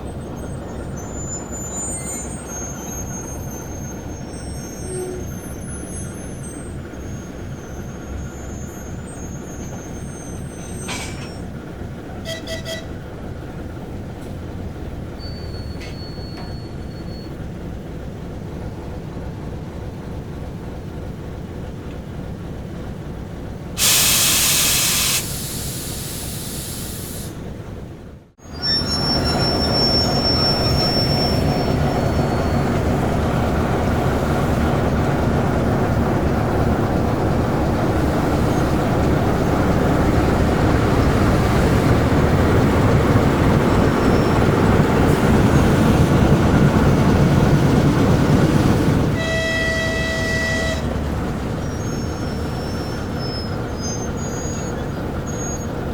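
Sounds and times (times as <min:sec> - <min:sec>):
diesel locomotive engine throbbing: 0:00.0 - 0:55.9
metallic wheel squeals: 0:00.2 - 0:11.6, 0:12.2 - 0:13.0, 0:15.2 - 0:17.4, 0:28.4 - 0:33.5, 0:43.5 - 0:44.8, 0:49.2 - 0:55.9
loud hiss of air: 0:23.8 - 0:27.4.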